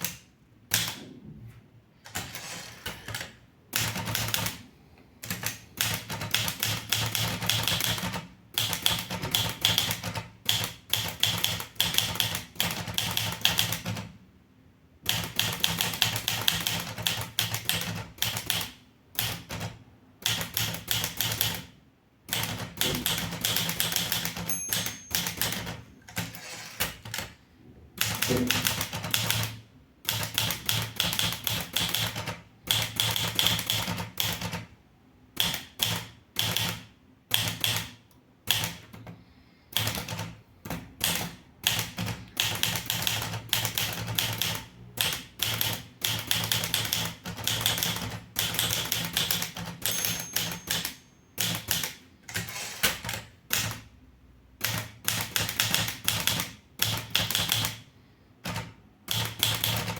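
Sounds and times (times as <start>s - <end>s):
manual typewriter key strikes: 0.0s - 1.1s, 5.2s - 14.1s, 22.3s - 27.3s, 28.0s - 34.6s, 35.4s - 38.9s, 39.8s - 53.8s, 54.6s - 57.8s, 58.5s - 59.9s.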